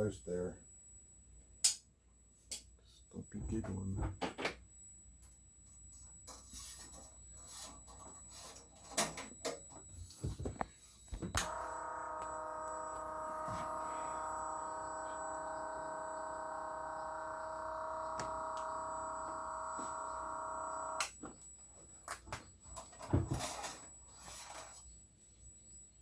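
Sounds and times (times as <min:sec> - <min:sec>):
oil pump motor whining: 0:11.2 - 0:21.2.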